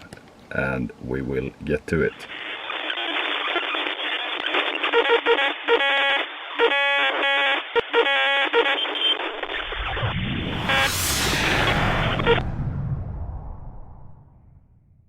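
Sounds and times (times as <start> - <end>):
tinny buzzing electronic tones: 4.8 - 12.5
whoosh: 9.5 - 15.0.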